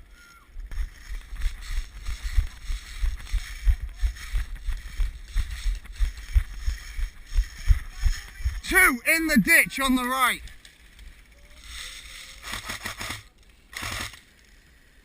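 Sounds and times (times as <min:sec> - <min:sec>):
dull thuds of footsteps: 0:00.6 - 0:08.7.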